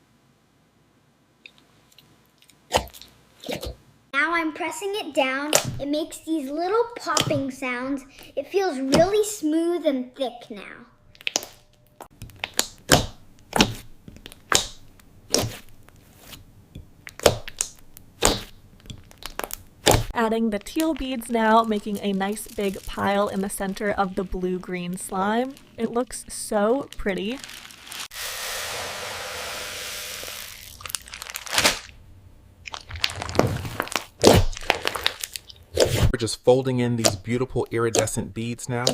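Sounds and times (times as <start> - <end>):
slime popping: 12.2 - 15.9, 17.0 - 28.1, 30.3 - 31.9, 32.6 - 35.9, 37.0 - 38.2.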